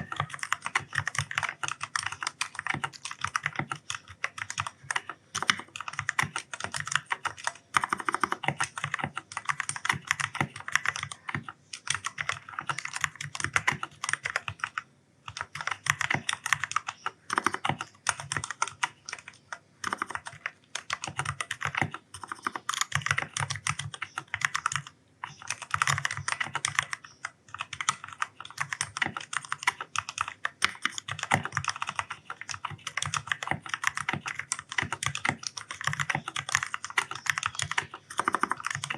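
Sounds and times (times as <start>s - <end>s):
fast mechanical keyboard typing: 0.0s - 38.9s.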